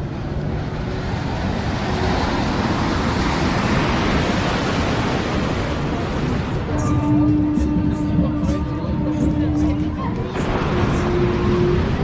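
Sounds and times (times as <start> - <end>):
ocean wave breaking: 0.0 - 8.0, 10.1 - 12.0.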